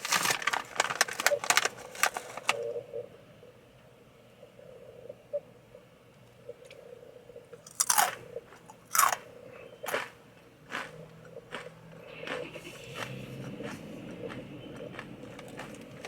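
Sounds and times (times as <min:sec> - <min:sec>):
tortilla chips crunching: 0:00.0 - 0:02.6, 0:07.7 - 0:09.2, 0:09.9 - 0:16.0.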